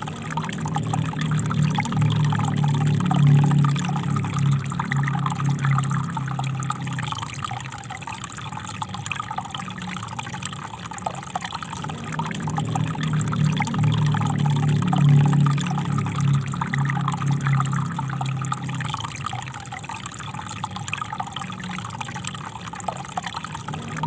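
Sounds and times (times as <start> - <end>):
low rumble: 0.0 - 7.9, 11.8 - 19.8.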